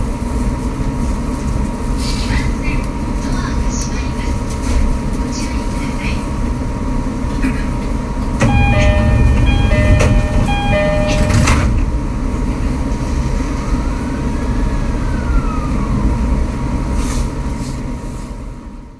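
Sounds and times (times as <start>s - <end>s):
train rumble: 0.0s - 18.8s
electronic chime melody: 8.4s - 11.8s.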